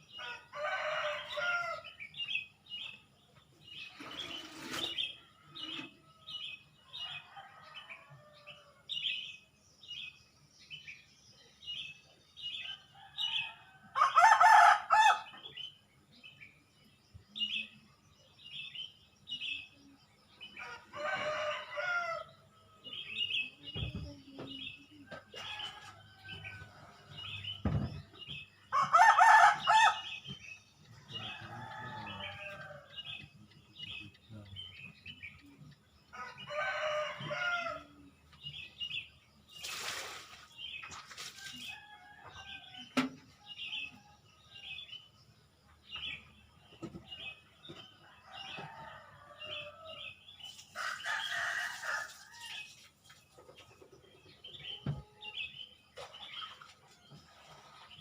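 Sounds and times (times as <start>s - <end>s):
small birds chirping: 0.0s - 58.0s
rooster crowing: 0.2s - 1.8s, 13.2s - 15.3s, 20.6s - 22.3s, 28.7s - 30.1s, 31.1s - 33.0s.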